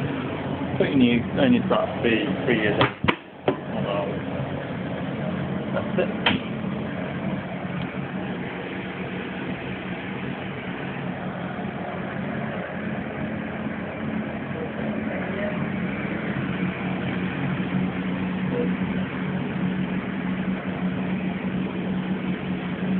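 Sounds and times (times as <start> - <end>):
cooking machine humming: 0.0 - 22.9.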